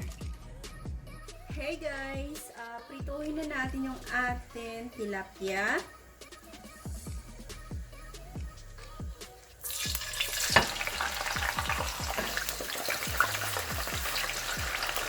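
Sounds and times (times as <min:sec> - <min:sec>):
fish sizzling in hot oil: 0:09.5 - 0:15.0
oil popping: 0:09.6 - 0:15.0.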